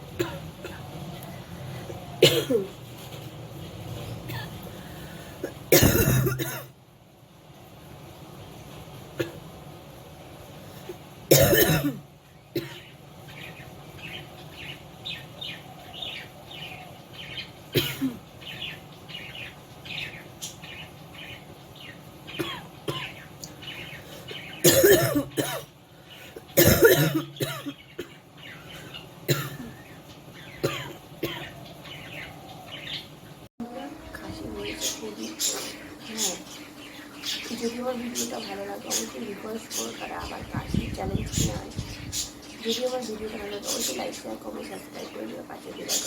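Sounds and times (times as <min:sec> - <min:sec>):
woman coughing: 0:00.2 - 0:00.8, 0:02.2 - 0:02.8, 0:04.3 - 0:04.6, 0:05.4 - 0:06.7, 0:11.3 - 0:12.0, 0:12.6 - 0:12.8, 0:17.8 - 0:18.2, 0:22.4 - 0:23.1, 0:24.6 - 0:25.7, 0:26.6 - 0:28.1, 0:29.3 - 0:29.8, 0:30.6 - 0:31.5.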